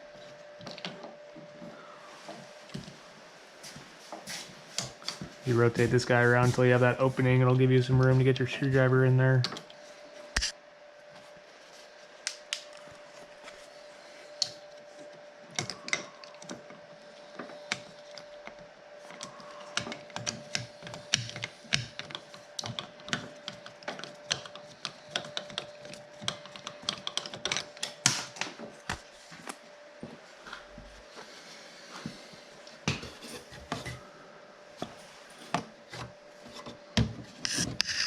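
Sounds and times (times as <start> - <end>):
faint steady hum: 0.0 - 38.0
screwdriver clicking on plastic parts: 19.1 - 28.2.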